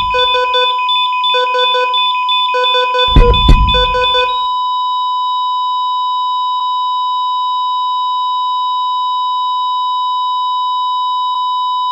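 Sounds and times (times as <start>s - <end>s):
electronic beep tone: 0.0s - 4.6s.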